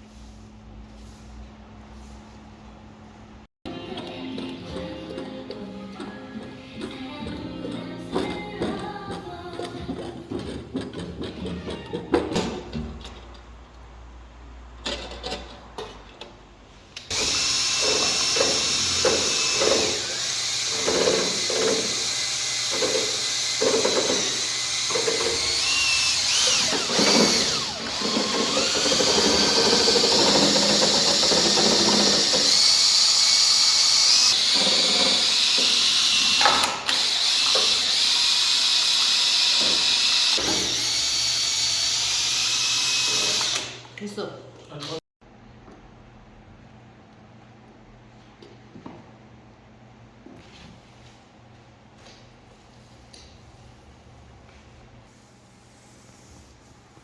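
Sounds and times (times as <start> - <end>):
power drill motor whining: 17.1 - 43.9.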